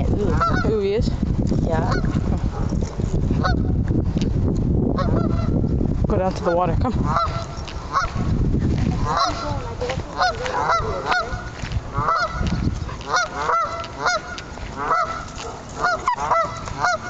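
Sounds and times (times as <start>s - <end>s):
geese honking: 0.2s - 0.8s, 1.8s - 2.2s, 3.4s - 3.8s, 5.0s - 5.6s, 6.9s - 8.3s, 9.0s - 17.0s.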